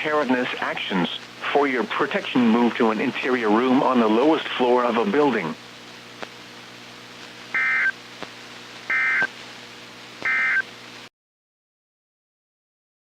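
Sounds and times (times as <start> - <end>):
humming hissing radio channel: 0.0 - 11.1
two-tone digital warble bursts: 7.6 - 7.9, 8.9 - 9.3, 10.3 - 10.6.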